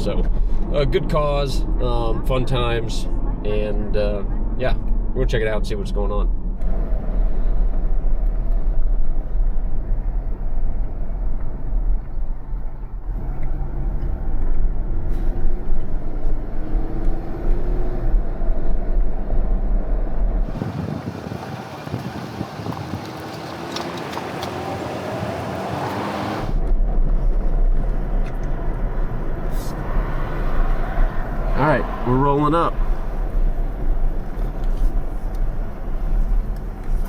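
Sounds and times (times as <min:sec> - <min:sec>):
vehicle road and engine rumble: 0:00.0 - 0:37.0
hissy sound with engine note: 0:29.4 - 0:33.8.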